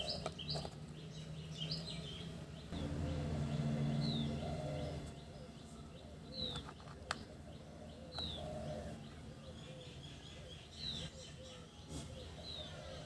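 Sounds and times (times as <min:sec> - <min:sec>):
low hum: 0:02.7 - 0:05.4.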